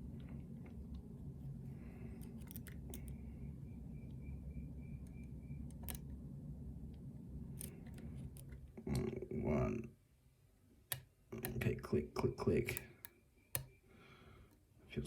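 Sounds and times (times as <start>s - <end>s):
light repeated ticking: 0.0s - 9.9s, 10.8s - 14.7s
low steady hum: 0.0s - 15.0s
metallic clicks and scrapes of lock picking: 2.1s - 3.2s, 5.7s - 6.1s, 7.6s - 8.6s.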